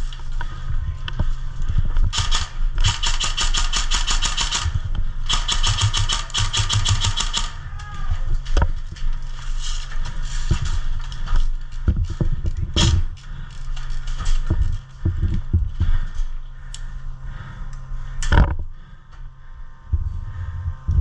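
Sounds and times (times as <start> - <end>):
airsoft rifle firing: 2.1 - 7.6.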